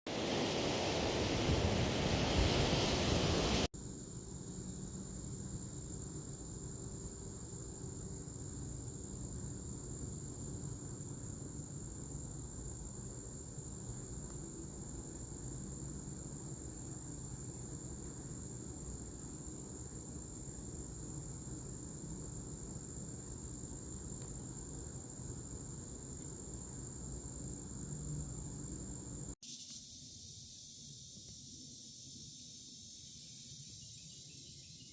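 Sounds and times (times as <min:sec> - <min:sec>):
loud rush of wind: 0:00.1 - 0:03.7
high-pitched insect drone: 0:03.9 - 0:34.9.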